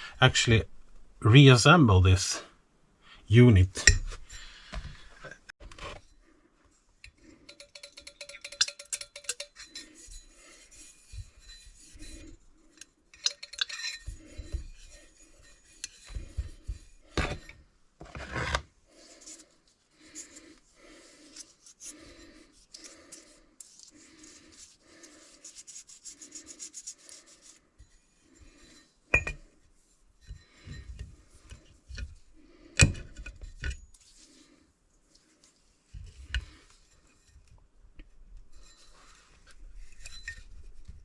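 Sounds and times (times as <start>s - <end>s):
metal scraping strokes: 7.5s - 18.6s.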